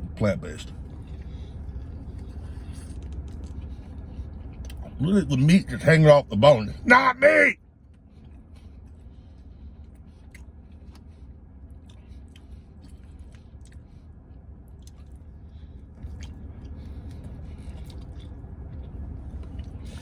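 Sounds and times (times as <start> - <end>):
steady low hum: 0.0 - 20.0
man chewing: 0.6 - 5.0, 11.7 - 20.0.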